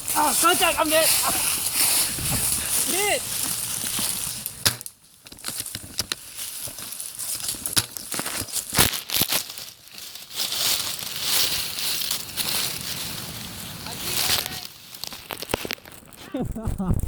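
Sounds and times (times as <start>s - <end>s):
crunching dry leaves and brush: 0.0s - 16.8s
sharp clicks and snaps: 14.3s - 16.2s.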